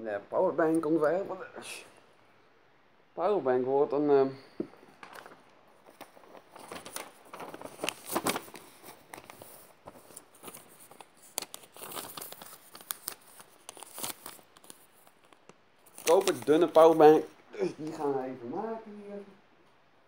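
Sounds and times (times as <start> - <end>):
material crinkling and rustling: 4.7 - 18.0.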